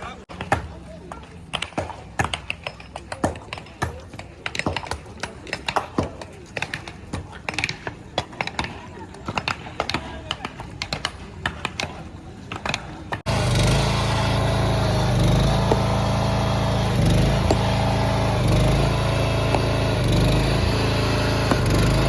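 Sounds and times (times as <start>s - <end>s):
loud machine engine running: 13.2s - 22.0s
sharp knocks: 14.2s - 22.0s.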